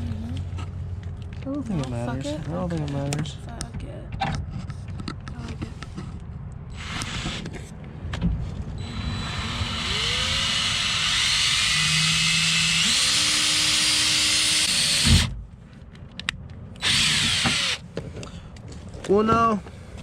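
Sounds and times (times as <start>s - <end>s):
power drill motor whine: 6.7s - 7.5s, 8.8s - 15.3s, 16.8s - 17.8s.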